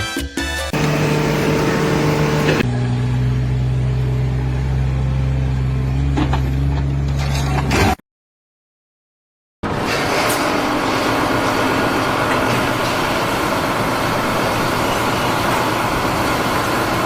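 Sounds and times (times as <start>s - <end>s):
motor engine humming: 0.7s - 2.6s.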